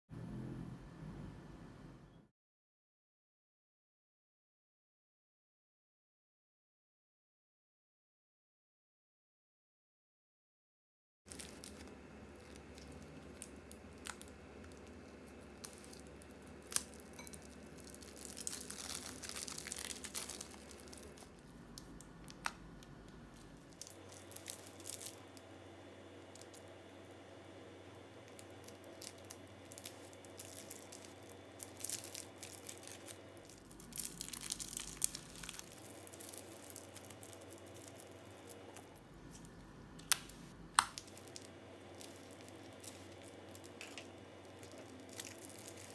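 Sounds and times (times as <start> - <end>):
plastic bags crinkling: 11.3 - 25.5, 28.2 - 45.9.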